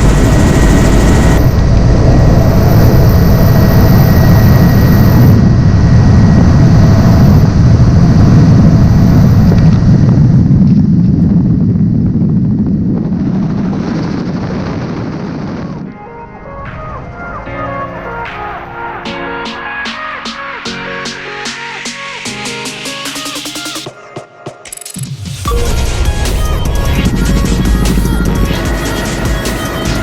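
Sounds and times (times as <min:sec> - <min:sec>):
helicopter rotor and engine drone: 0:00.0 - 0:11.4, 0:25.4 - 0:30.0.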